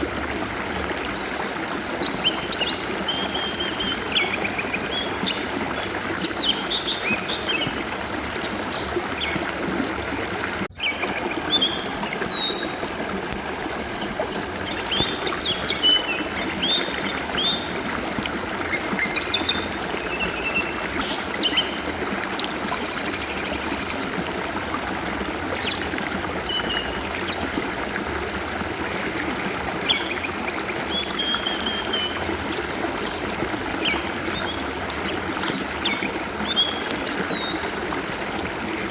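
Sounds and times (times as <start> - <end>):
water trickling: 0.0 - 38.9
bird singing whistles and chirps: 8.4 - 9.4, 10.8 - 17.6, 30.9 - 37.6.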